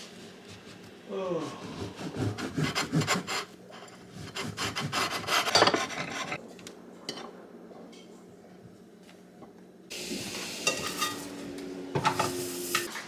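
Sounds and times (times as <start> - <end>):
knife sawing through bread: 1.6 - 6.4.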